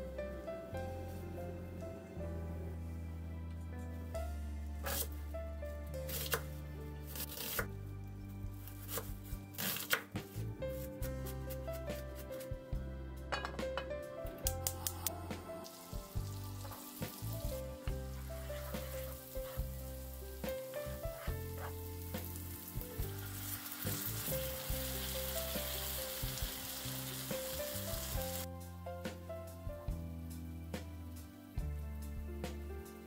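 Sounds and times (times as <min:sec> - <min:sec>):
background music: 0:00.0 - 0:33.0
food frying in oil: 0:15.7 - 0:28.5.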